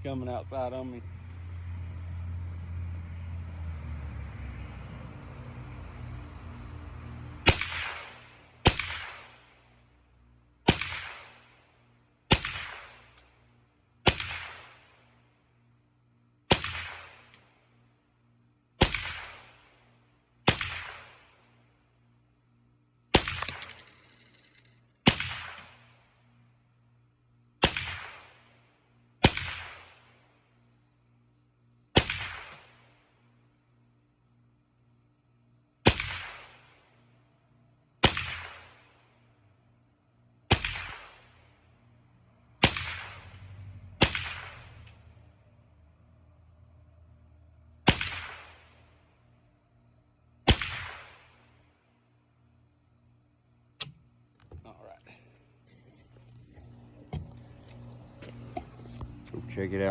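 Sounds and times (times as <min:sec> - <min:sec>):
low steady rumble: 0:00.0 - 0:07.6
rifle shots with echo: 0:07.4 - 0:09.7, 0:10.7 - 0:11.6, 0:12.3 - 0:13.2, 0:14.1 - 0:15.0, 0:16.5 - 0:17.4, 0:18.8 - 0:19.8, 0:20.5 - 0:21.4, 0:23.1 - 0:24.0, 0:25.0 - 0:26.0, 0:27.6 - 0:28.5, 0:29.2 - 0:30.1, 0:32.0 - 0:32.9, 0:35.8 - 0:36.9, 0:38.0 - 0:39.0, 0:40.5 - 0:41.4, 0:42.6 - 0:43.4, 0:44.0 - 0:44.8, 0:47.9 - 0:48.9, 0:50.5 - 0:51.4.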